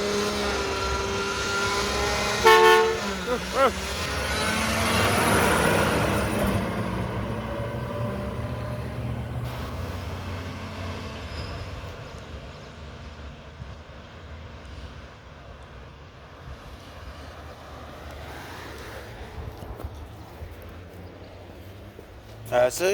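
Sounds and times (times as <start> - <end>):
garbage truck diesel engine: 0.0 - 14.5.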